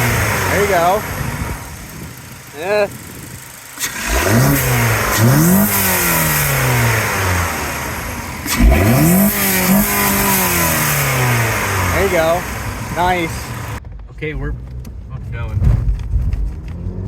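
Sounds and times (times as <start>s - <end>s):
car engine revving: 0.0s - 17.0s.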